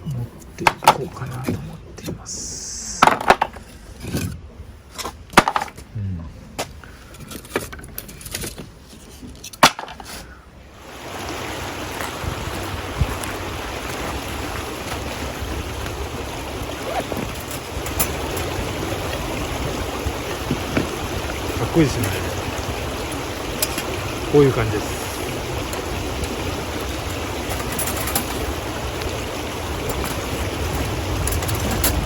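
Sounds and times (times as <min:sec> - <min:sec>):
firewood knocking together: 0:05.4 - 0:05.8
river flowing: 0:10.6 - 0:32.0.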